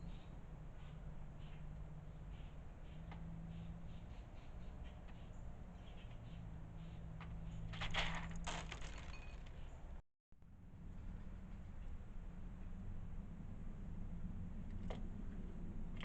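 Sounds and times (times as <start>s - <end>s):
low hum: 10.4s - 16.0s.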